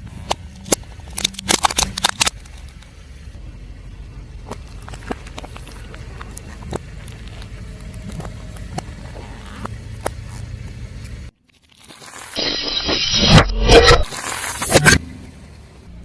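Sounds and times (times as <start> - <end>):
car engine low rumble: 0.0 - 11.4, 14.8 - 16.0.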